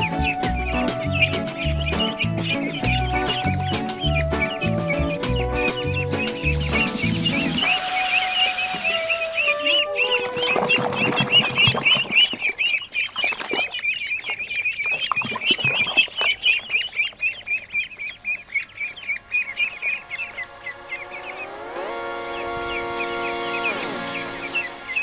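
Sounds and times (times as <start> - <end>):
music: 0.0 - 11.7, 19.5 - 25.0
ducklings peeping: 0.0 - 25.0.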